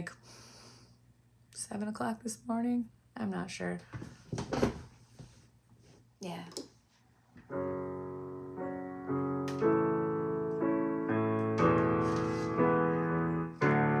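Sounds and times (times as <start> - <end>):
piano playing slow chords: 7.5 - 14.0.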